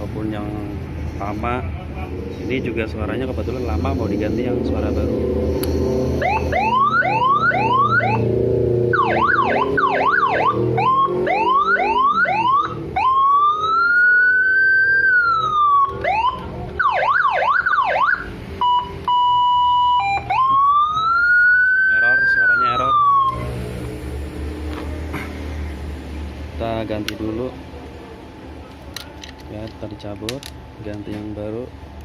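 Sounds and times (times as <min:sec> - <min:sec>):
electronic siren whoops and wails: 0:04.2 - 0:23.6.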